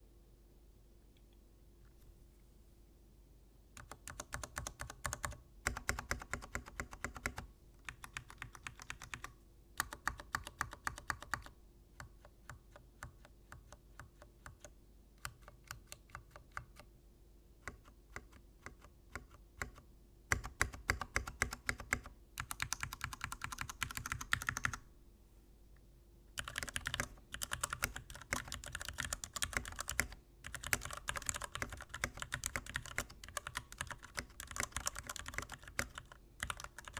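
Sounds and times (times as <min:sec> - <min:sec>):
mechanical keyboard typing: 0:03.8 - 0:16.9, 0:17.6 - 0:24.8, 0:26.4 - 0:36.9.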